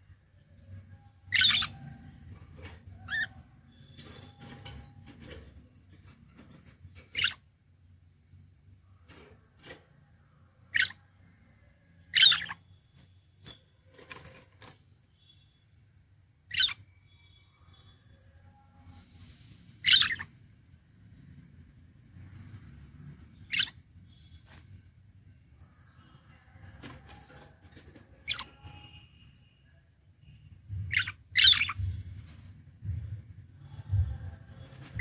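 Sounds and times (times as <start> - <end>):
budgerigars chirping and squawking: 1.3 - 5.4, 7.0 - 7.4, 10.7 - 11.0, 12.1 - 12.6, 16.5 - 16.8, 19.8 - 20.3, 23.3 - 24.6, 26.9 - 28.8, 30.8 - 32.1.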